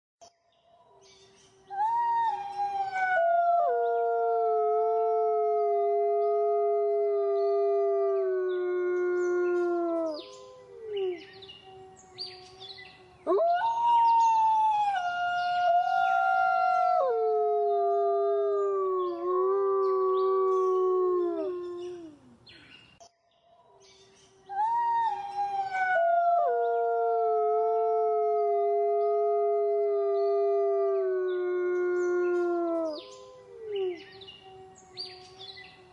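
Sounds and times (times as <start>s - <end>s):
wolves howling: 1.8s - 11.5s, 13.2s - 22.4s, 24.6s - 34.3s.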